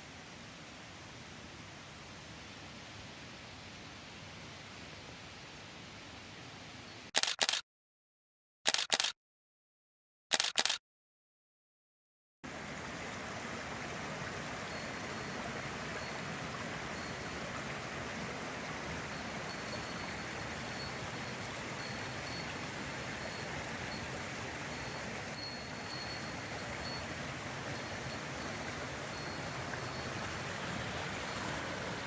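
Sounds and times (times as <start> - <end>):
stream water rushing: 12.4 - 32.0.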